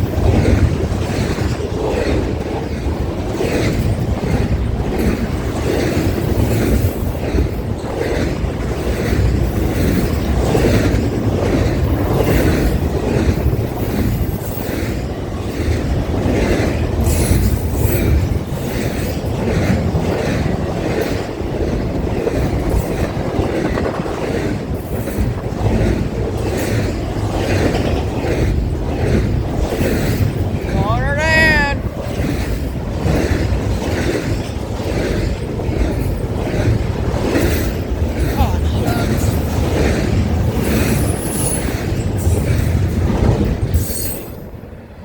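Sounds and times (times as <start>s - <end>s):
wheels clacking over rail joints: 0.0s - 30.8s, 31.8s - 45.0s
steel wheels rumbling on rail: 0.0s - 45.0s.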